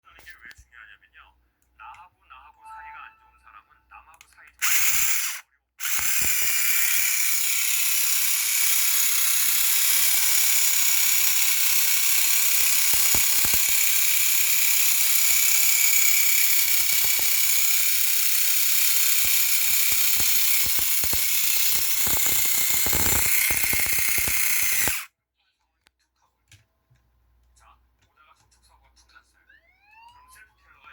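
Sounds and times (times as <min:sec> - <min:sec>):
toy electric motor whirring: 0:04.6 - 0:25.1.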